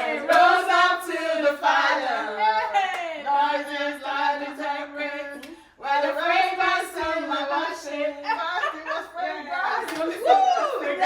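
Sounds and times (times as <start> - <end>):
group singing gospel chorus: 0.0 - 11.0.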